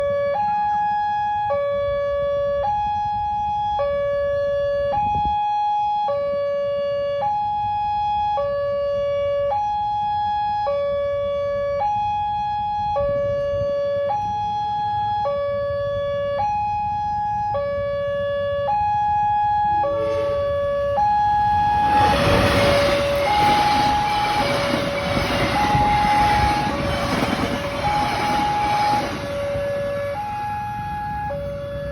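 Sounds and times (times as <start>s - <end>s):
level crossing two-tone alarm: 18.6s - 31.9s
train rumbling past: 19.7s - 31.9s.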